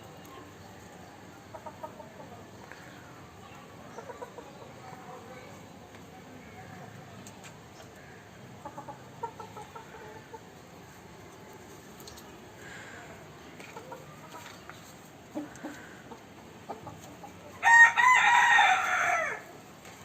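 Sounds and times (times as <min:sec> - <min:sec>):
faint chicken clucking: 0:00.1 - 0:19.7
rooster crowing: 0:17.6 - 0:19.5.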